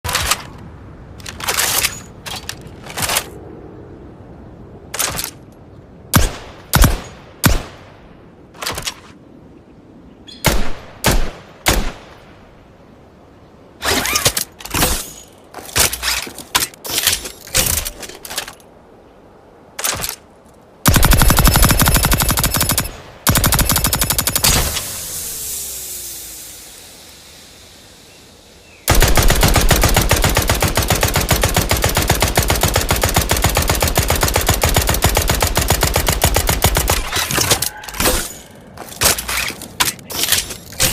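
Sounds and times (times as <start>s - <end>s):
machine gun firing bursts: 20.9s - 24.7s, 28.9s - 37.1s.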